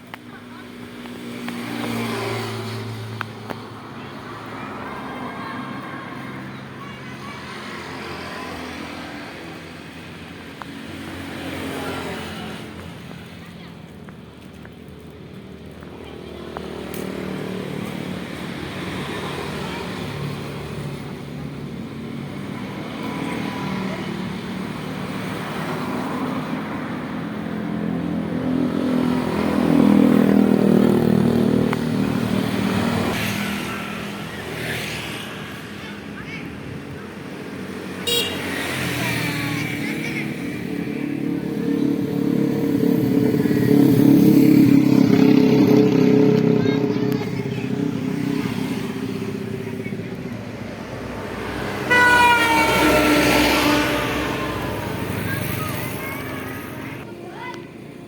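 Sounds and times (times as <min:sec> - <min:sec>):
road noise: 0:00.0 - 0:58.0
motor vehicle passing: 0:22.0 - 0:57.6.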